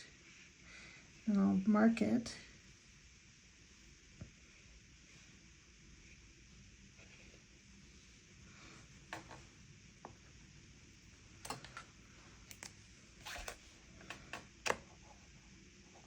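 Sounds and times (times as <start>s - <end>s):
painting supplies clicking on desk: 11.4s - 12.8s, 13.4s - 14.9s.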